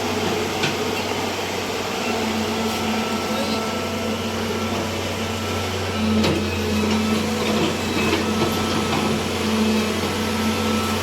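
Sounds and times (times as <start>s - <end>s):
road cutting machine droning: 0.0s - 11.0s.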